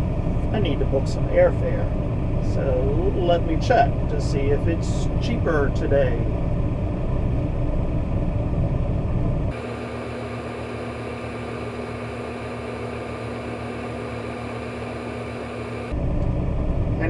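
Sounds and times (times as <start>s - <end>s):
engine low rumble: 0.0s - 17.0s
pulsing engine hum: 0.0s - 17.0s.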